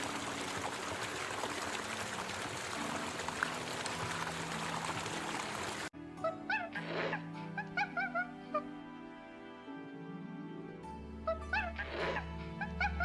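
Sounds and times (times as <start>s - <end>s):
running water rushing: 0.0s - 5.9s.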